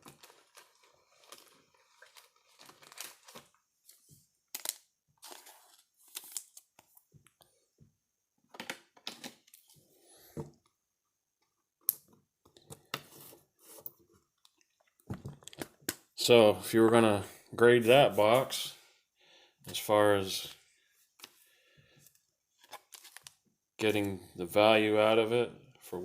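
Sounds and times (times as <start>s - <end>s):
trading cards rustling: 0.0s - 7.0s, 22.6s - 23.4s.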